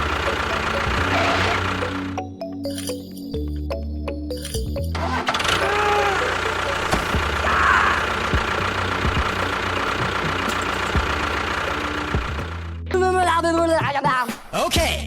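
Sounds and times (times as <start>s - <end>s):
small motor humming and rattling: 0.0s - 3.4s, 4.5s - 12.8s.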